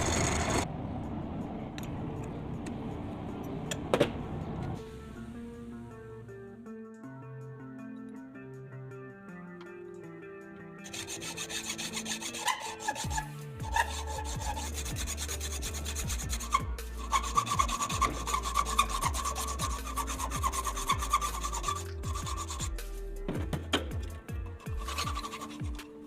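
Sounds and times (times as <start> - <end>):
hand tool rasping and scraping: 10.8 - 22.9, 24.6 - 26.0.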